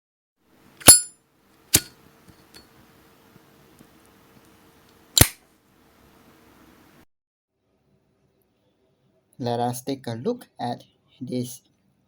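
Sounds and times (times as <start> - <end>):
lighter lid clicking: 5.2 - 5.4.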